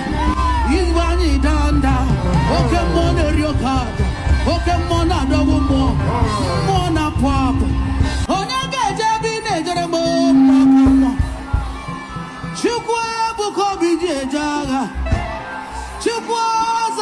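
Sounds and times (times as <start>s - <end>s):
low pulsing beat: 0.0s - 8.4s, 10.3s - 12.1s
person singing: 0.0s - 17.0s.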